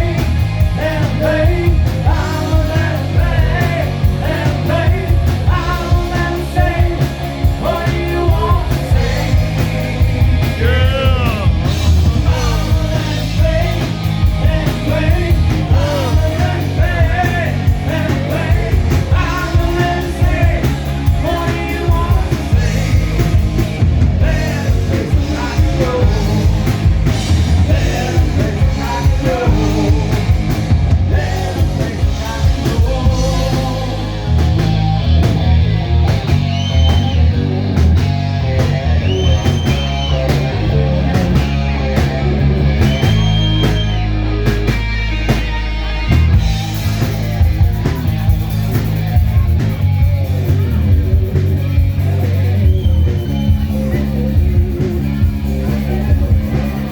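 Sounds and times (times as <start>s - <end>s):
lead singer: 0.0s - 37.4s
rock band playing: 0.0s - 56.9s.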